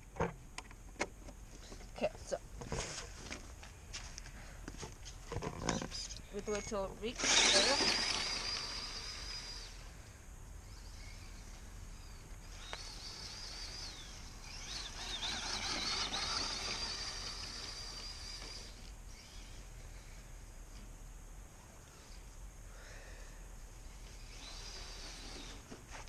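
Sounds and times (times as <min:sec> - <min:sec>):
electric motor whining: 0:05.3 - 0:20.1, 0:24.0 - 0:26.0.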